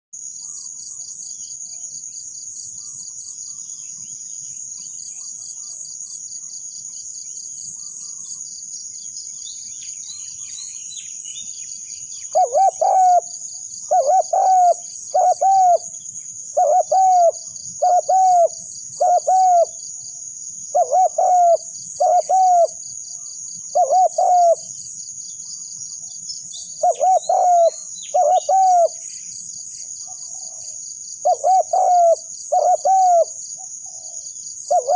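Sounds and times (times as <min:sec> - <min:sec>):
small birds chirping: 0:00.2 - 0:20.1, 0:20.7 - 0:34.9
high-pitched pulsing insect drone: 0:00.2 - 0:34.9
dove cooing: 0:12.2 - 0:15.9, 0:16.5 - 0:19.8, 0:20.7 - 0:22.8, 0:23.6 - 0:24.7, 0:26.8 - 0:29.0, 0:31.2 - 0:34.9.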